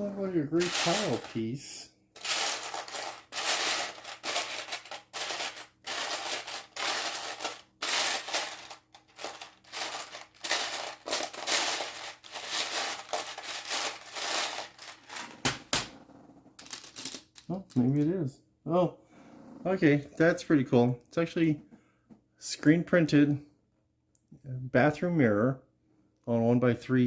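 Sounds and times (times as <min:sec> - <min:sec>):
plastic bricks rattling: 0:00.6 - 0:01.5, 0:02.2 - 0:15.5.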